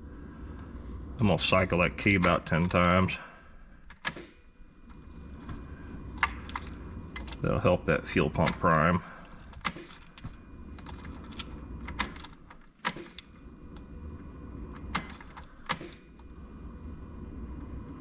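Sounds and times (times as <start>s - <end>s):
ignition key clicks: 2.0s - 2.9s, 3.5s - 14.0s, 14.6s - 16.3s.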